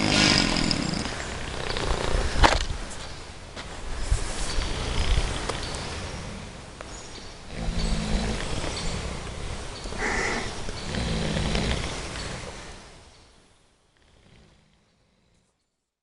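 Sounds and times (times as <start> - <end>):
pigs snoring: 0.0 - 2.4, 4.4 - 12.9, 14.0 - 15.6.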